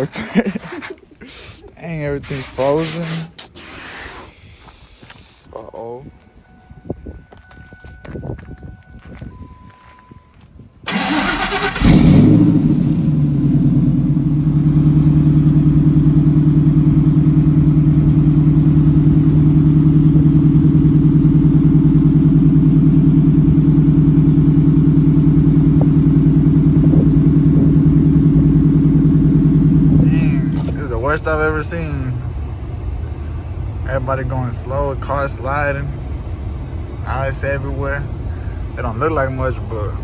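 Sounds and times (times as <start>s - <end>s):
engine starter cranking: 10.9s - 12.6s
engine idling: 10.9s - 40.0s.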